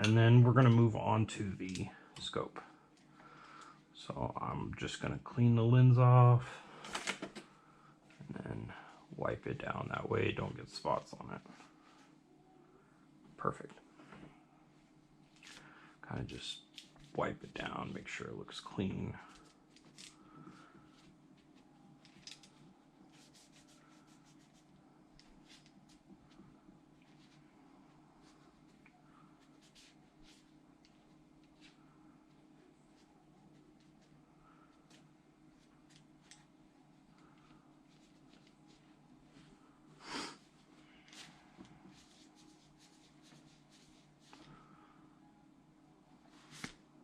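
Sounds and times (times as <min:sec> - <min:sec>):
low room hum: 0:00.0 - 0:47.0
cloth rubbing: 0:23.0 - 0:24.7, 0:40.3 - 0:44.4.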